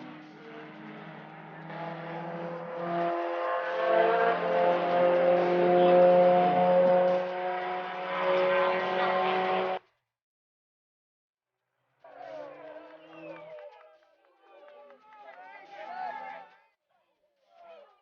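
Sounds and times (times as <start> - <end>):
race car engine running: 0.0 - 9.8.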